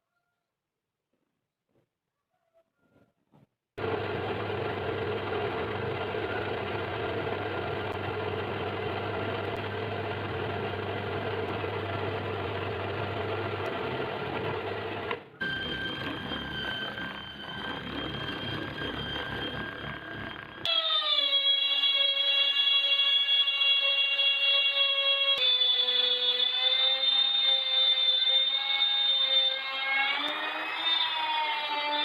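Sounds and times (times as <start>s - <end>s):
power tool motor running: 3.8s - 22.4s, 25.4s - 32.0s.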